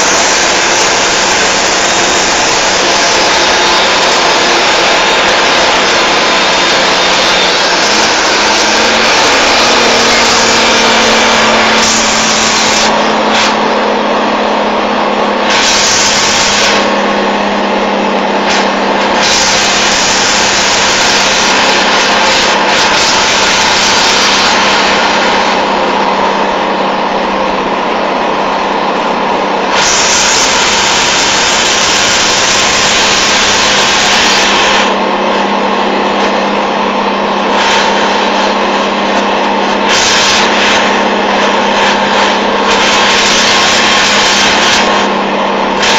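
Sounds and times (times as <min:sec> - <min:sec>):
air hiss: 0:00.0 - 0:13.6, 0:15.4 - 0:17.0, 0:18.5 - 0:25.8
diesel truck engine droning: 0:00.0 - 0:45.9.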